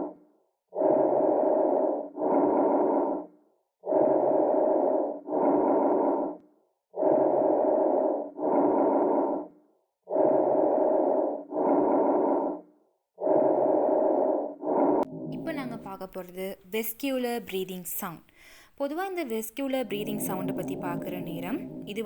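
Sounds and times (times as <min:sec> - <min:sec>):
breath sounds through stethoscope: 0:18.3 - 0:18.8.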